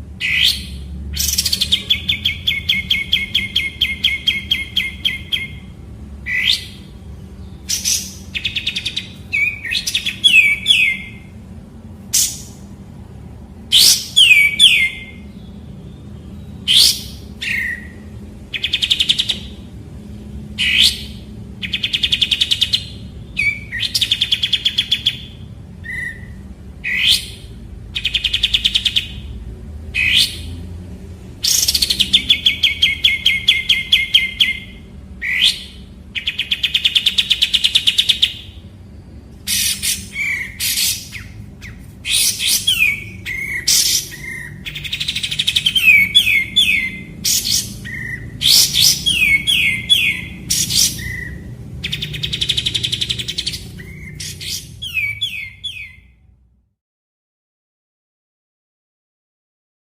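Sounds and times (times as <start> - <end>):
songbird rattling trills: 39.4 - 55.8.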